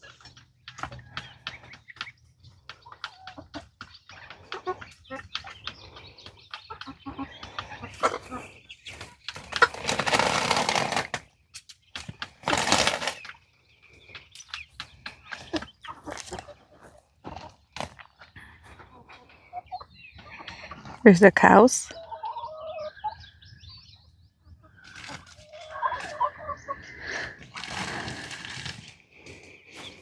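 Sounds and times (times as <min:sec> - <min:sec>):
chickens clucking: 0:00.0 - 0:30.0
loud rustling bursts: 0:09.7 - 0:11.2, 0:12.4 - 0:13.2.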